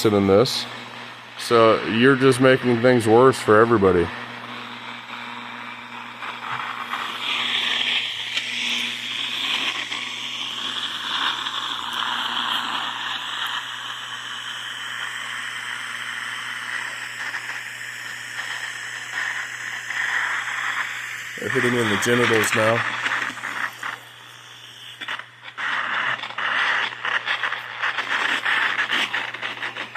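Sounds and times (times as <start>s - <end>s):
radio static hissing and crackling: 0.0s - 29.9s.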